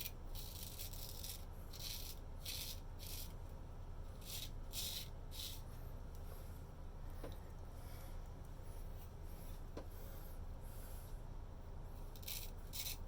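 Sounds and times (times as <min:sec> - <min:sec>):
razor scraping stubble: 0:00.0 - 0:03.4, 0:04.2 - 0:05.7, 0:12.0 - 0:13.0.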